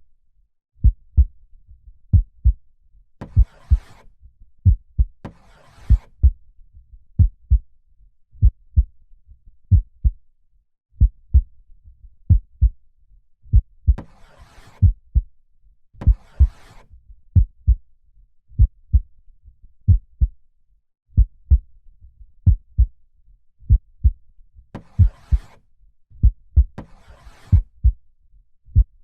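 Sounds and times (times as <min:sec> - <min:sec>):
slow heartbeat thumps: 0:00.8 - 0:01.3, 0:02.1 - 0:02.6, 0:03.3 - 0:03.9, 0:04.6 - 0:05.1, 0:07.2 - 0:07.6, 0:08.4 - 0:08.9, 0:09.7 - 0:10.2, 0:11.0 - 0:11.5, 0:12.3 - 0:12.8, 0:13.5 - 0:14.0, 0:14.8 - 0:15.3, 0:17.4 - 0:17.8, 0:18.6 - 0:19.1, 0:19.9 - 0:20.3, 0:21.2 - 0:21.6, 0:22.4 - 0:22.9, 0:23.7 - 0:24.2, 0:24.9 - 0:25.4, 0:26.2 - 0:26.8, 0:27.5 - 0:28.0.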